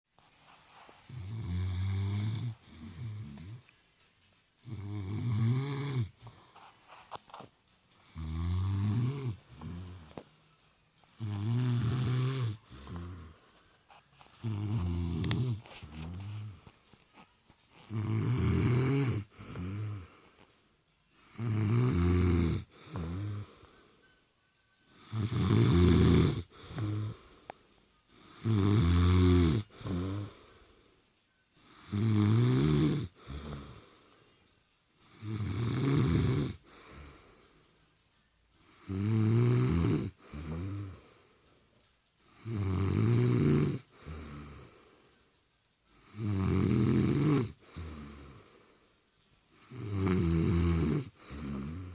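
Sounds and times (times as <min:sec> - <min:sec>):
woman snoring: 0:01.1 - 0:03.6, 0:04.6 - 0:06.5, 0:08.1 - 0:10.2, 0:11.2 - 0:13.4, 0:14.4 - 0:16.7, 0:17.7 - 0:20.2, 0:21.2 - 0:23.7, 0:24.9 - 0:27.4, 0:28.2 - 0:30.5, 0:31.6 - 0:34.0, 0:35.1 - 0:37.4, 0:38.7 - 0:41.1, 0:42.3 - 0:44.8, 0:46.0 - 0:48.5, 0:49.6 - 0:51.9.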